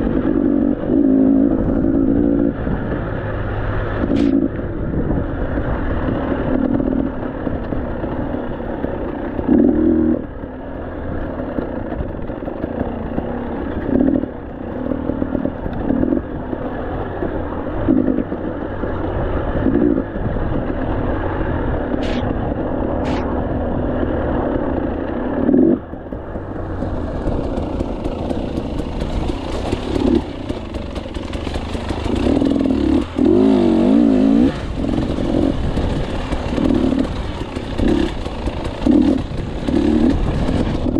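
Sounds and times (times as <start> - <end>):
motorcycle engine revving: 0.0 - 40.9
motorcycle clatter: 4.0 - 40.9.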